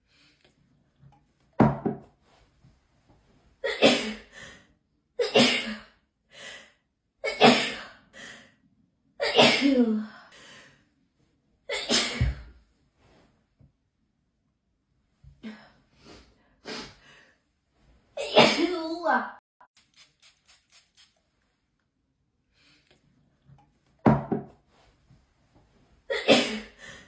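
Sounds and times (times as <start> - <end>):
person sneezing: 26.1 - 26.8.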